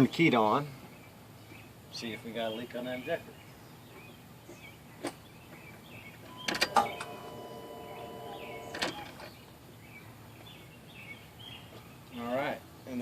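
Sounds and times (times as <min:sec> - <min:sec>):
fuel pump humming: 0:06.3 - 0:09.3.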